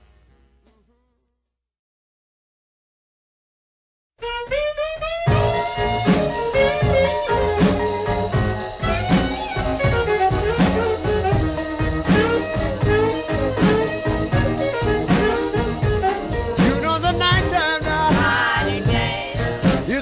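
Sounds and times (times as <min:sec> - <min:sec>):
instrumental rhythm and blues music: 0:04.2 - 0:20.0.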